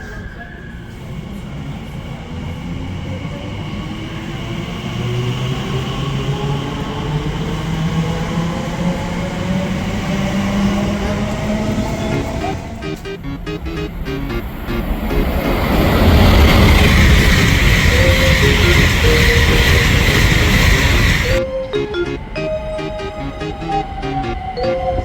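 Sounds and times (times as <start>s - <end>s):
train wheels rumbling: 1.0s - 21.4s
traction motor whine rising: 4.4s - 21.4s
low hum rising in pitch: 12.0s - 21.4s.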